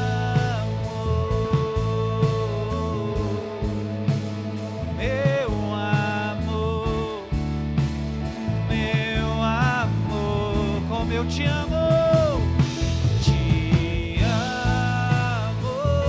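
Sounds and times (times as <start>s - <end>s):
person singing long notes: 0.0s - 3.9s, 13.2s - 16.0s
band playing slow worship song: 0.0s - 16.0s.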